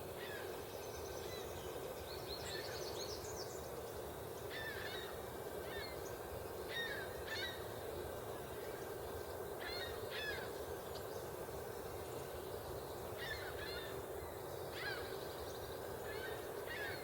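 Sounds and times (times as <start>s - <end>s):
low background hiss: 0.0s - 17.0s
bird calling: 13.2s - 14.0s.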